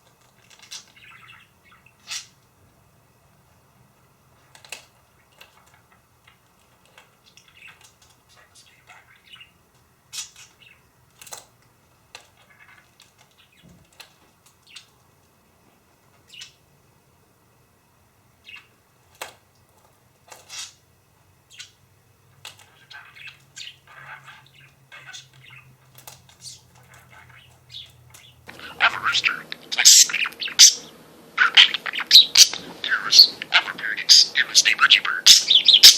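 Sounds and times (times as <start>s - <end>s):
budgerigar chirping: 0.6s - 2.4s, 7.3s - 10.8s, 18.4s - 18.8s, 21.5s - 21.8s, 22.7s - 25.8s, 26.4s - 35.9s.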